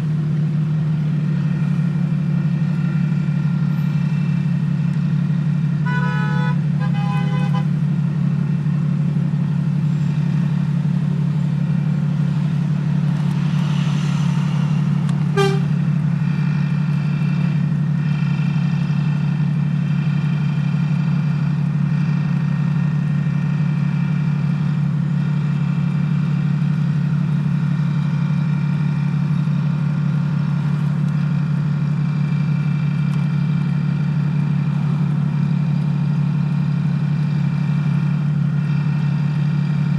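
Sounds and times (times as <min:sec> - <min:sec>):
loud exhaust droning: 0:00.0 - 0:39.9
car horn toots: 0:05.8 - 0:07.8, 0:15.2 - 0:15.8.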